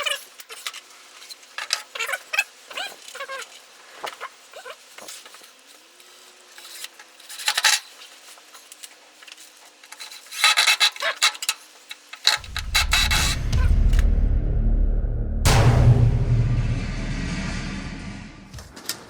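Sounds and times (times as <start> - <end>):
loud low rumble: 12.4 - 18.7.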